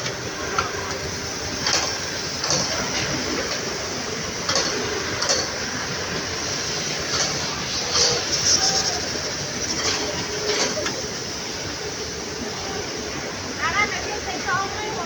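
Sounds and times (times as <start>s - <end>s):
sharp hissing clicks: 0.0s - 11.6s.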